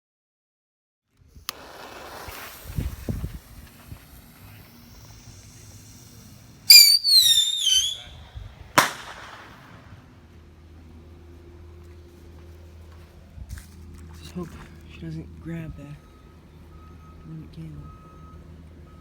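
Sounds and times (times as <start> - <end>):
firework bang: 1.5 - 5.1, 6.6 - 10.1
whistling firework shriek: 1.5 - 9.7.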